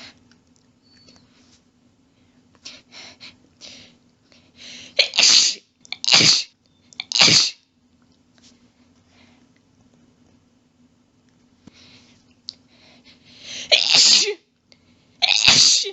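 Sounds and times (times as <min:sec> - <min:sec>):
faint breathing: 0:01.2 - 0:05.0, 0:11.6 - 0:13.7
person sneezing: 0:04.9 - 0:06.5, 0:07.1 - 0:07.6, 0:13.6 - 0:14.4, 0:15.2 - 0:15.9
catching breaths: 0:11.6 - 0:13.7.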